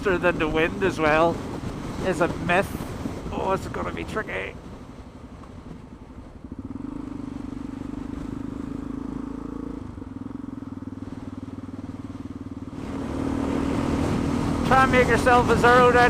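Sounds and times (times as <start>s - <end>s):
motorcycle engine running: 4.5s - 16.0s.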